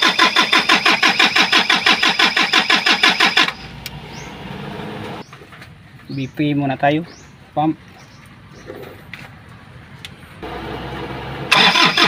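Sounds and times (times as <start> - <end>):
starter motor cranking diesel engine: 0.0 - 5.2, 10.4 - 12.0.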